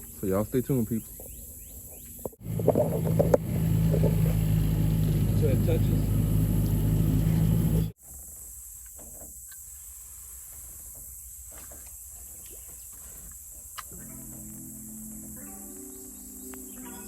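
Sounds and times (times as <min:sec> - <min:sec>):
boat motor humming: 0:02.0 - 0:08.0, 0:14.0 - 0:17.0
music: 0:14.0 - 0:17.0.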